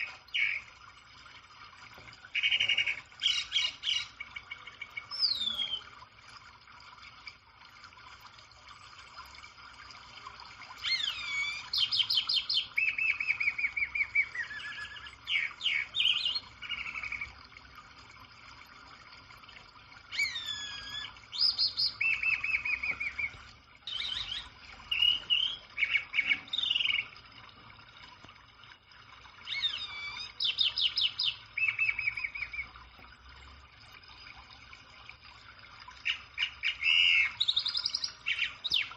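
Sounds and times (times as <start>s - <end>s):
songbird singing: 0.0s - 0.7s, 2.3s - 5.9s, 10.8s - 17.3s, 20.1s - 27.1s, 29.5s - 32.8s, 36.1s - 38.9s.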